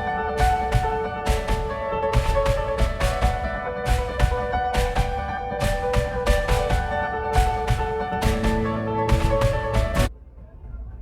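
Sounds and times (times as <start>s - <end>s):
melodic music with drum beat: 0.0s - 10.1s.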